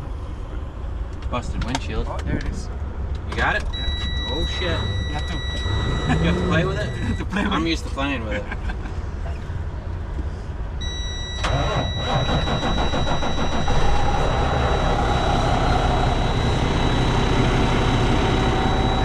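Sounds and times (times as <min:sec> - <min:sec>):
diesel truck engine starting: 0:03.4 - 0:07.5, 0:10.8 - 0:19.0
high-pitched warning buzzer: 0:03.8 - 0:07.2, 0:10.8 - 0:19.0.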